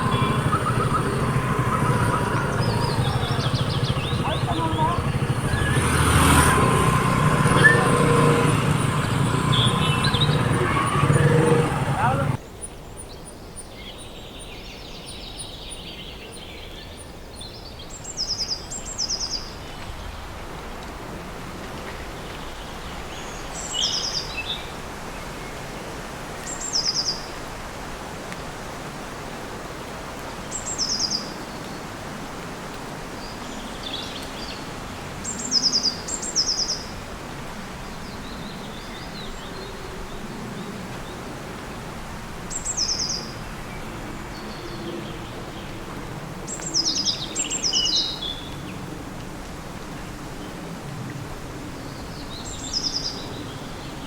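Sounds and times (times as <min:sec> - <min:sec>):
bird calling: 0:00.0 - 0:12.4.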